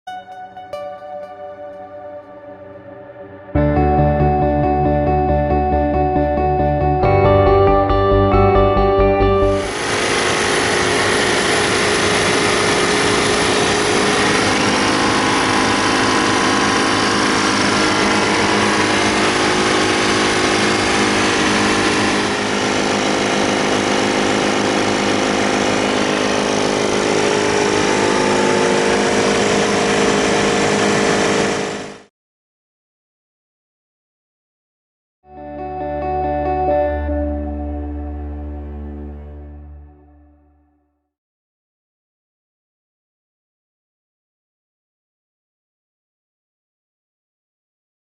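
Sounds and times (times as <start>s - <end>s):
air compressor running: 9.4s - 32.1s.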